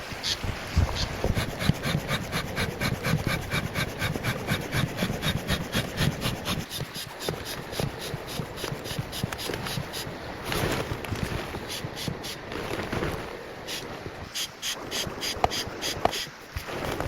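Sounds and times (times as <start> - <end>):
rapid rasping strokes: 0.0 - 12.6, 13.6 - 17.0.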